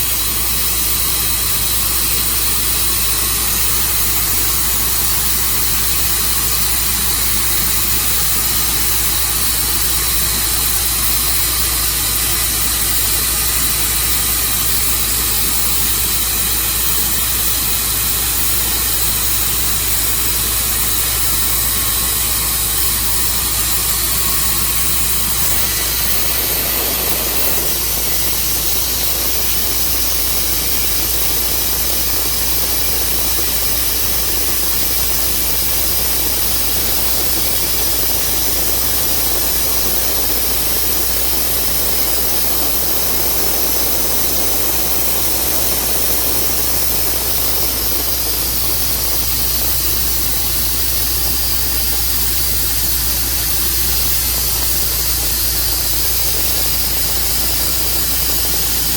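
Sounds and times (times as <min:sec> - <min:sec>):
sawmill engine and saw running: 0:00.0 - 0:58.9.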